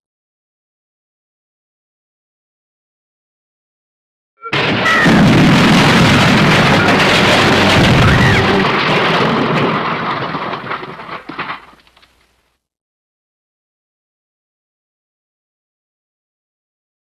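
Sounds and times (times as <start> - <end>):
loud crash with breaking debris: 4.5 - 12.4.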